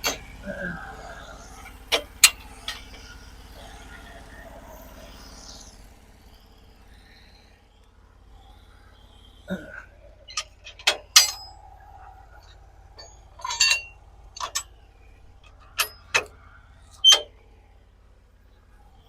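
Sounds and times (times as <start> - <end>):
metal parts clanking: 0.0 - 3.2, 9.6 - 17.4.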